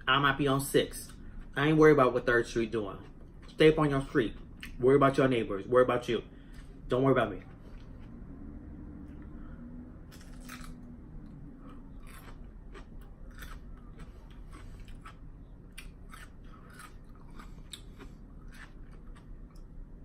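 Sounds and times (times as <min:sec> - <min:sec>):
crunchy lettuce chewing: 0:10.1 - 0:10.9, 0:11.6 - 0:19.6.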